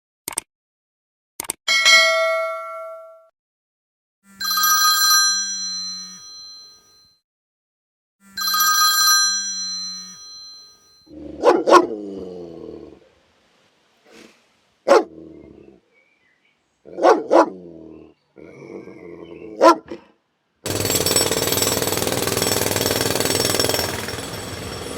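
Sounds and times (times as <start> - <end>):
old phone ringtone: 4.3 - 7.2, 8.3 - 11.1
dog barking and growling: 11.1 - 13.1, 14.1 - 15.8, 16.8 - 20.2.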